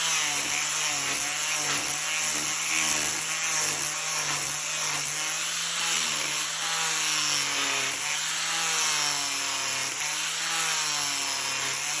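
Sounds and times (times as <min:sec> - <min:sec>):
power tool cutting wood: 0:00.0 - 0:12.0.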